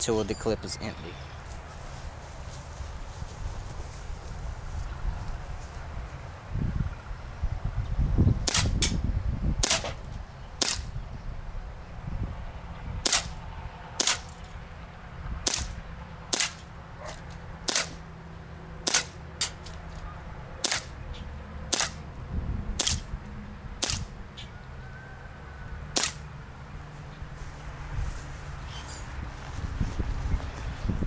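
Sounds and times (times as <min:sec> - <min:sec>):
airsoft pistol shots: 0:08.4 - 0:09.0, 0:09.6 - 0:10.0, 0:10.6 - 0:10.9, 0:13.0 - 0:13.4, 0:14.0 - 0:14.4, 0:15.4 - 0:16.6, 0:17.7 - 0:18.0, 0:18.8 - 0:19.7, 0:20.6 - 0:21.0, 0:21.7 - 0:22.0, 0:22.8 - 0:23.1, 0:23.8 - 0:24.1, 0:26.0 - 0:26.2.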